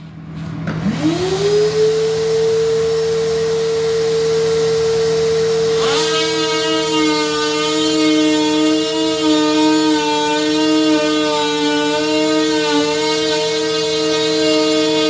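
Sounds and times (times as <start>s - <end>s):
oscillating multi-tool whining: 0.8s - 15.0s.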